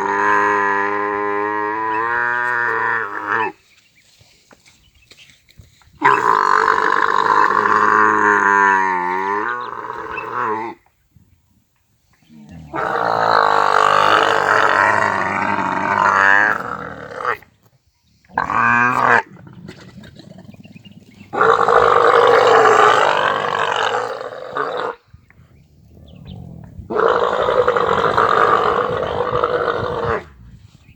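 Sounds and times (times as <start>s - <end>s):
large animal roaring: 6.1s - 10.8s, 12.3s - 17.4s, 21.2s - 25.0s, 25.7s - 30.4s.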